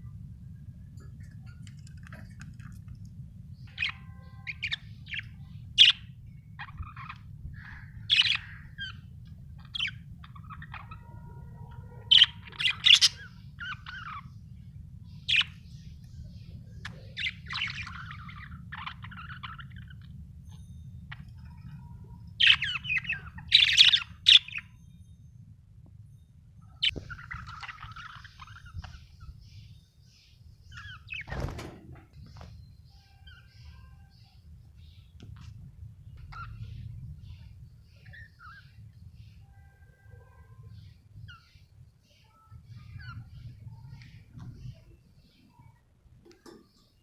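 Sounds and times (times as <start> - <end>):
steady low hum: 0.0 - 47.0
budgerigar chirping and squawking: 6.6 - 11.2, 12.0 - 14.4.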